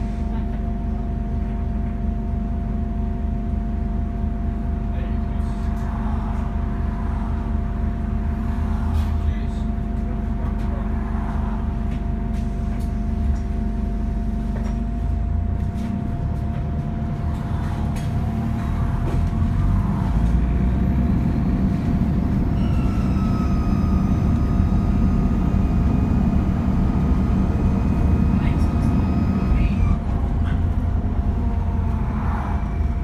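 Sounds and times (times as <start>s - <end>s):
diesel bus engine under load: 0.0s - 33.0s.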